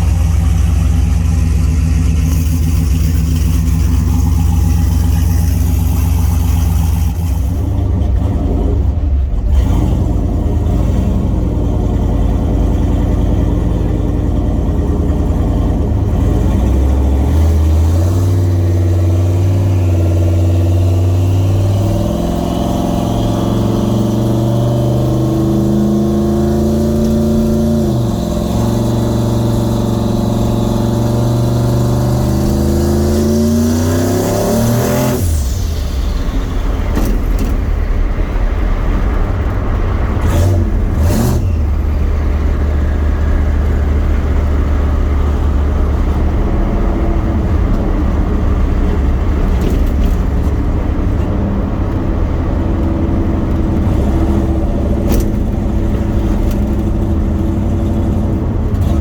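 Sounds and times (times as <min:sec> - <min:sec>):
turbocharged truck engine revving: 0:00.0 - 0:59.0.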